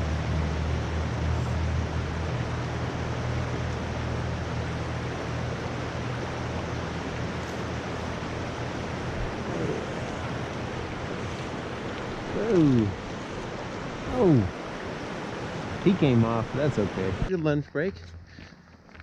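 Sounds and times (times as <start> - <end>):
river water rushing: 0.0 - 17.3
wind rumble on microphone: 0.0 - 17.3.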